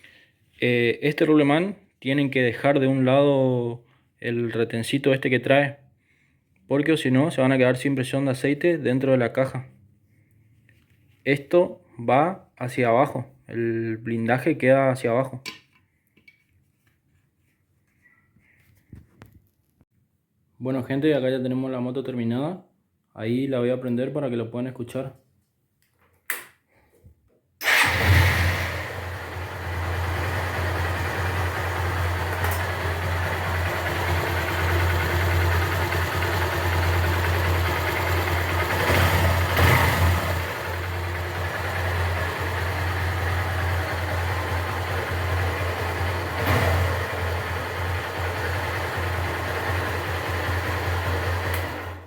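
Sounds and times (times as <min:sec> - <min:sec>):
engine revving: 0:27.6 - 0:43.5, 0:44.4 - 0:52.0
motorcycle engine starting and idling: 0:27.6 - 0:52.0.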